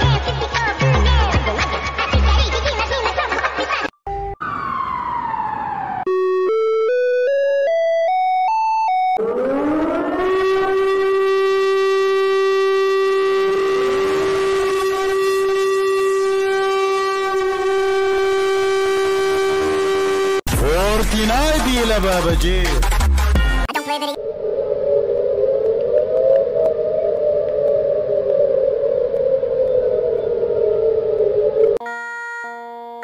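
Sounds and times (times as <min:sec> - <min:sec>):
siren winding up: 0:04.1 - 0:20.5, 0:24.2 - 0:33.0.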